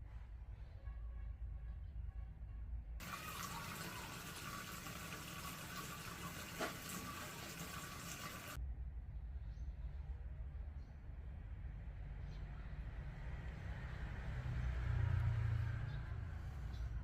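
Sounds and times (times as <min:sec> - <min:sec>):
tap water running: 0:03.0 - 0:08.6.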